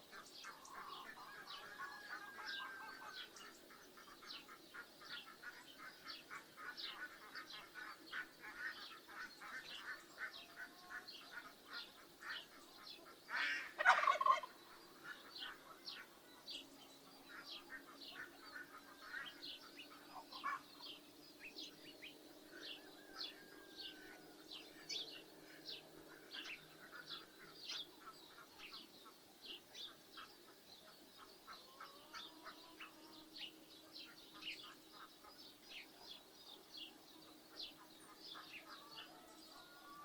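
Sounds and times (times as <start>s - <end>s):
small birds chirping: 0.0s - 40.0s
turkey gobbling: 13.4s - 14.6s.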